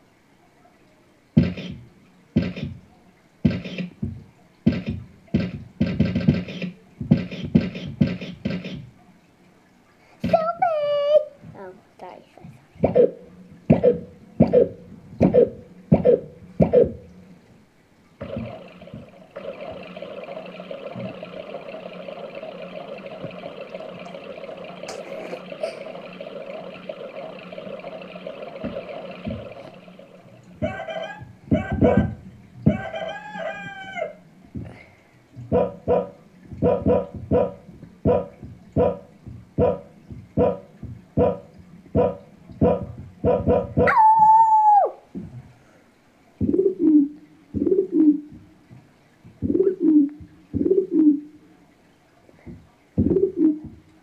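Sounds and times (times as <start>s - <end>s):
electronic keyboard sound effect: 18.2s - 32.1s
electronic dog bark samples: 30.6s - 32.8s, 35.5s - 44.1s.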